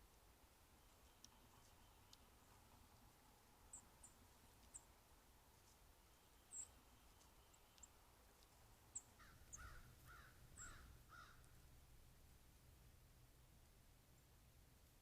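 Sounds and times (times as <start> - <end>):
small birds chip notes: 0.0 - 11.6
harsh bird calls: 9.0 - 11.4.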